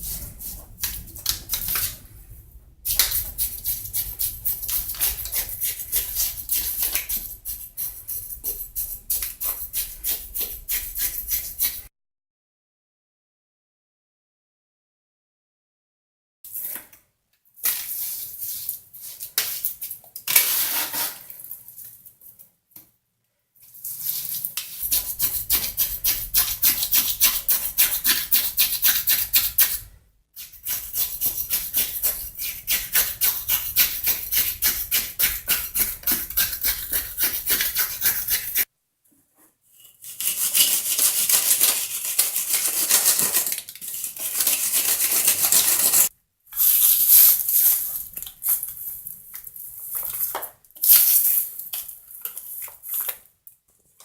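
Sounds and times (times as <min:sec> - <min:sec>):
hand tool scraping: 0:02.9 - 0:11.9, 0:23.9 - 0:38.7, 0:39.8 - 0:48.7.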